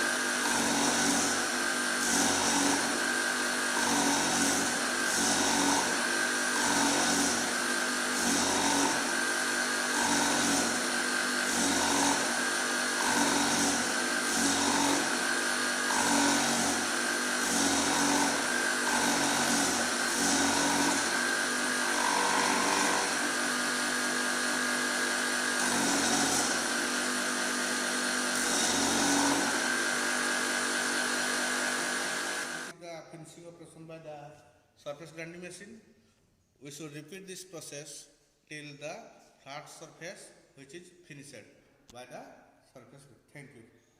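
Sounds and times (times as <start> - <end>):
grinding wheel whine: 5.8 - 32.7.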